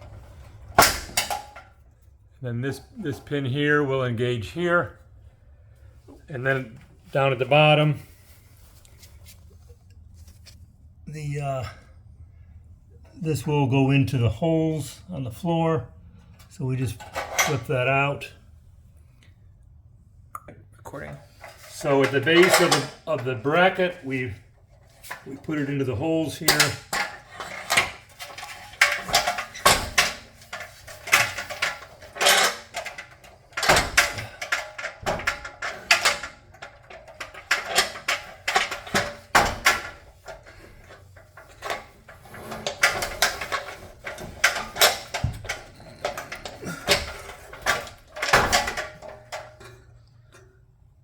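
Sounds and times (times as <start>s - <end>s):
metal clanks and knocks: 0.0s - 1.8s, 16.3s - 17.9s, 21.2s - 50.6s.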